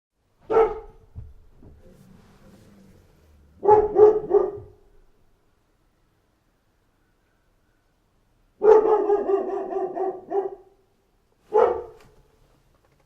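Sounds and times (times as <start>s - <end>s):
dog barking: 0.4s - 1.2s, 3.6s - 5.0s, 8.6s - 10.8s, 11.5s - 12.2s
faint low sound: 1.0s - 8.3s.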